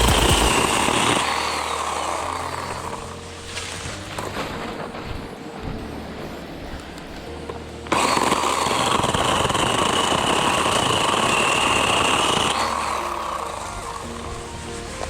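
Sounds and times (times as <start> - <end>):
electric chainsaw whine: 0.0 - 4.3, 7.9 - 15.0
faint background music: 0.0 - 15.0.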